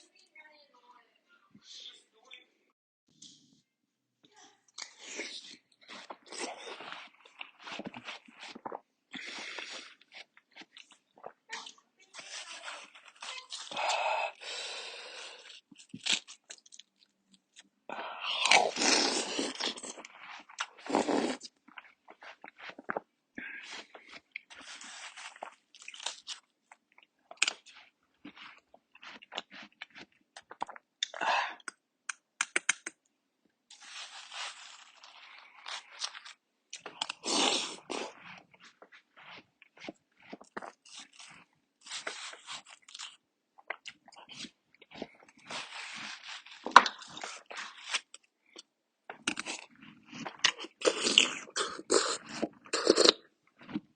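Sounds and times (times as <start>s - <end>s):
person chewing watermelon: 4.7s - 33.0s, 33.7s - 53.9s
wet clicking mouth sounds: 30.4s - 33.1s.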